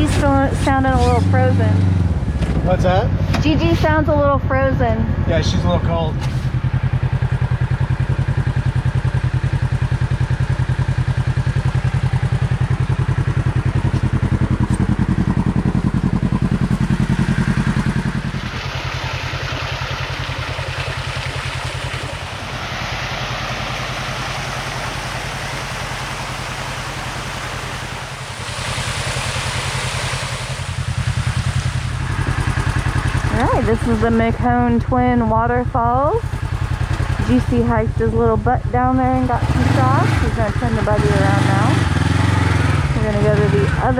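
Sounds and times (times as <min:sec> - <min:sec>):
engine idling: 0:00.0 - 0:43.9
broad rushing hiss: 0:22.2 - 0:32.0.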